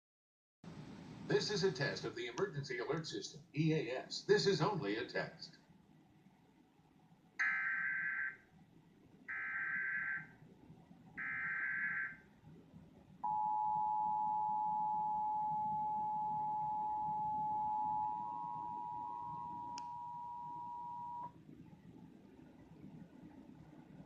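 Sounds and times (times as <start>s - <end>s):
two-tone attention signal: 13.3s - 21.3s.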